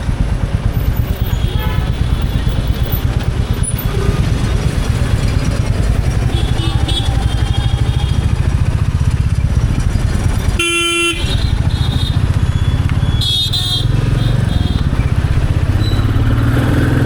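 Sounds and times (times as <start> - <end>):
vehicle horn honk: 1.2 - 2.3, 10.6 - 14.9.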